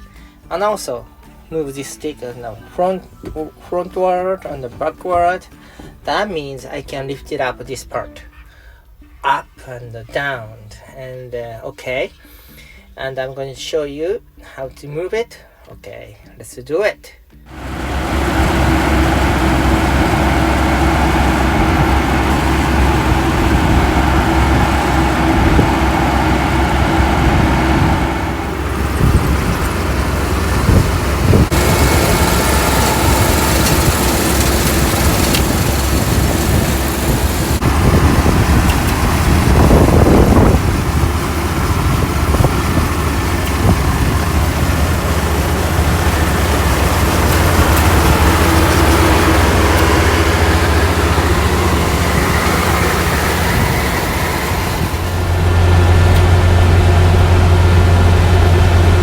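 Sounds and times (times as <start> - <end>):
combine harvester engine drone: 17.5 - 59.0.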